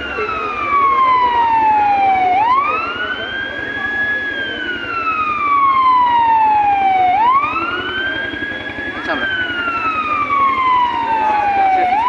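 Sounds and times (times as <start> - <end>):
emergency siren wailing: 0.0 - 12.0.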